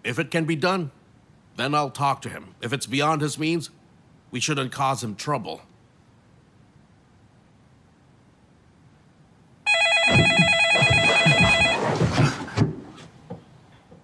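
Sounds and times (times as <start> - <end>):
telephone warbling ring: 9.7 - 11.9
handling noise: 9.7 - 14.0.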